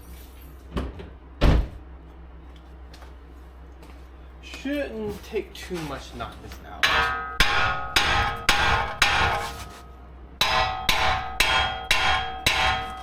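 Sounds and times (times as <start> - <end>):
hammer striking steel: 6.8 - 9.8, 10.4 - 13.0.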